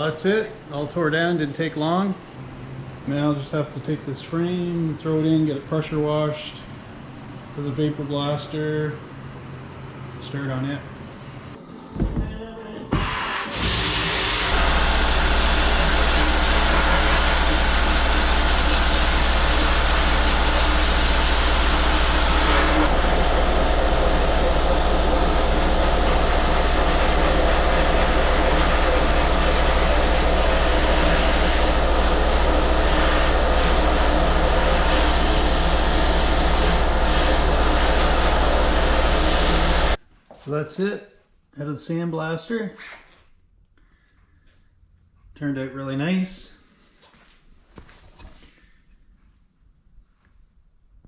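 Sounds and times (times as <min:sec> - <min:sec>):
sandblasting hiss: 0:13.0 - 0:40.0.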